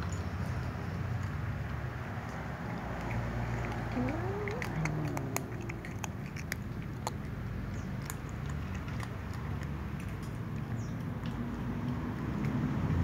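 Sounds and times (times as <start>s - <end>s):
cats chewing: 0.0s - 13.0s
low background rumble: 2.8s - 9.0s.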